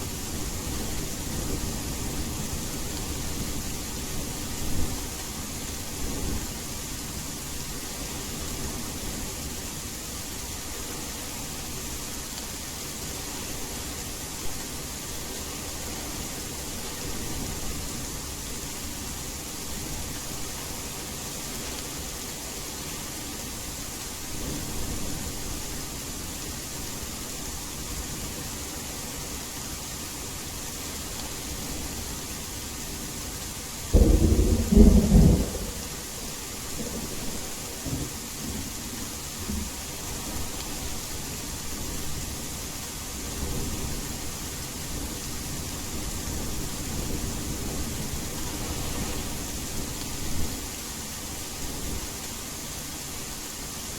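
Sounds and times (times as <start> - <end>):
steady rain: 0.0 - 53.9
distant thunder rumbles: 33.9 - 38.1.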